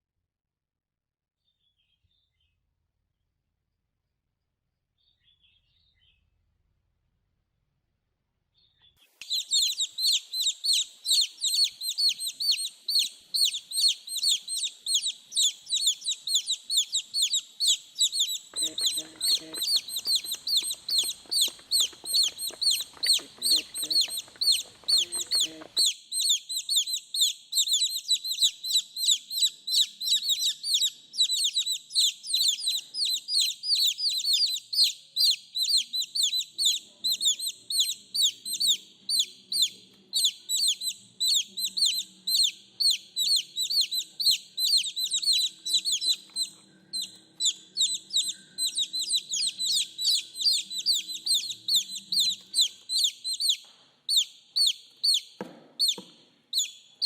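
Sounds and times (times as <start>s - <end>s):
baby chicks peeping: 8.6s - 57.0s.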